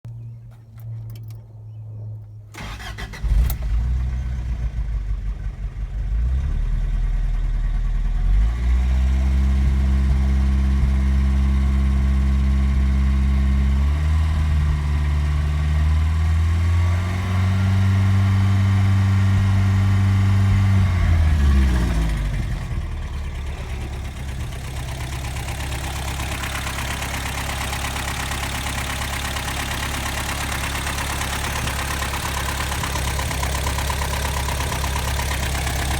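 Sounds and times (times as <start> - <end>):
car engine starting and idling: 2.5 - 35.9
engine ticking noise: 20.4 - 35.9.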